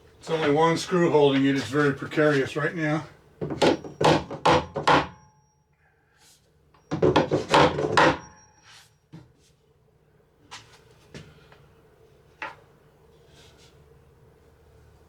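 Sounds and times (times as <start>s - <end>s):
wooden cabinet knocking against wall: 3.4s - 5.2s, 6.9s - 8.2s.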